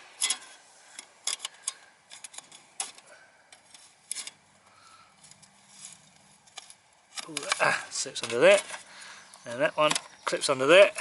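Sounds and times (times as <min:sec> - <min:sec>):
metallic clicks of table parts: 0:00.2 - 0:04.4.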